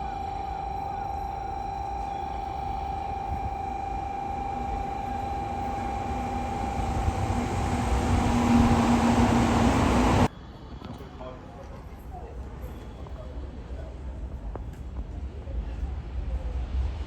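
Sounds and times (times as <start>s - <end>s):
bullet train rushing noise: 0.0s - 10.3s
steady high tone: 0.0s - 10.3s.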